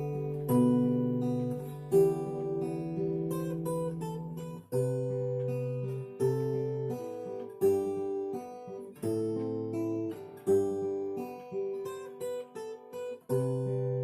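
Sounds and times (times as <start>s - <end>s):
acoustic guitar chords: 0.0s - 14.0s.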